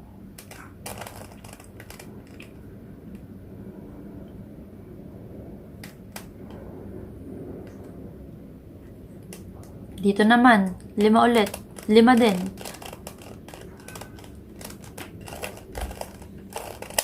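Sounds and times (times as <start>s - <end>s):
low steady hum: 0.0s - 17.0s
puzzle cube layers clicking: 10.7s - 17.0s.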